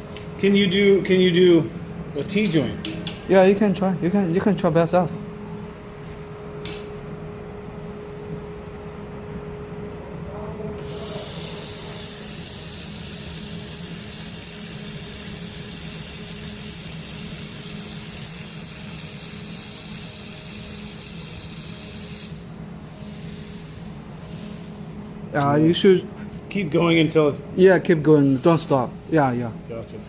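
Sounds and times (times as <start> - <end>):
cooling fan hum: 0.0 - 30.0
laser welder hissing: 10.8 - 22.5, 28.2 - 28.9.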